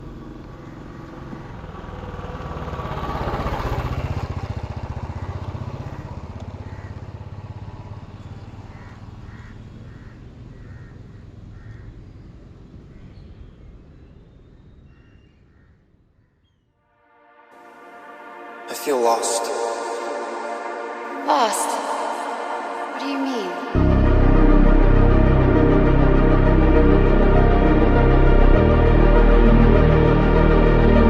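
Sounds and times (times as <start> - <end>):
vehicle engine passing by: 0.0 - 12.9.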